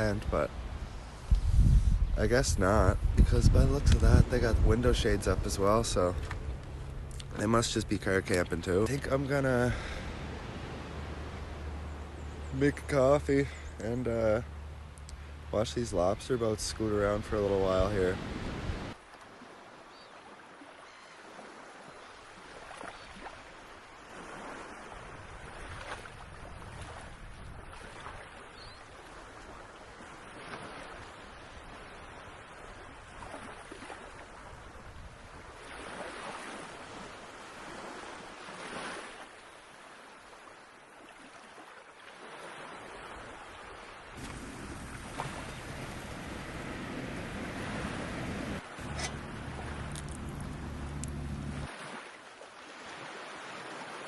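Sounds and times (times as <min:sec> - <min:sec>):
wind rumble on microphone: 0:00.0 - 0:07.3, 0:44.2 - 0:51.7
ocean surf washing ashore: 0:00.0 - 0:20.7, 0:29.0 - 0:54.0.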